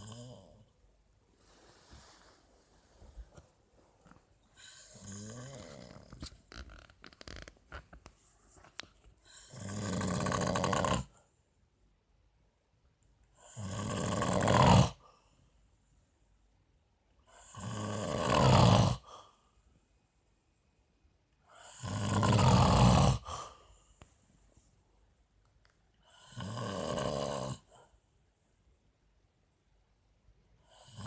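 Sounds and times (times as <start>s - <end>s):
man snoring: 0.0s - 0.7s, 4.6s - 6.2s, 9.3s - 11.2s, 13.4s - 15.0s, 17.3s - 19.1s, 21.5s - 23.6s, 26.0s - 27.8s, 30.6s - 31.0s.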